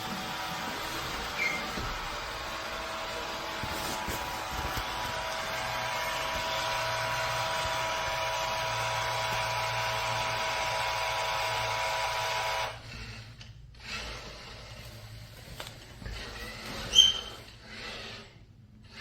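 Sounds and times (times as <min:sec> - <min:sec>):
robot vacuum motor whirring: 0:00.0 - 0:13.0.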